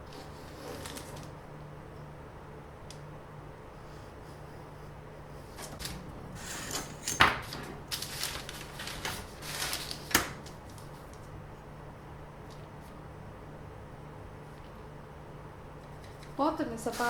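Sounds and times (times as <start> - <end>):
handling knocks and rustles: 5.6 - 11.3.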